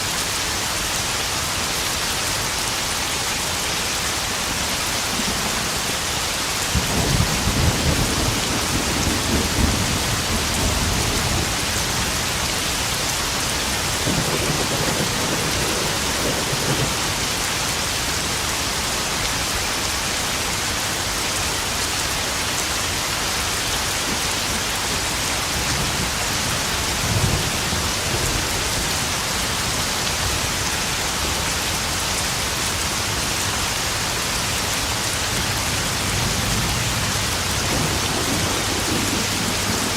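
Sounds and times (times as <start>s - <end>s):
heavy rain pattering on puddles: 0.0s - 39.9s
thunder rumbling: 6.7s - 17.4s, 35.9s - 39.9s.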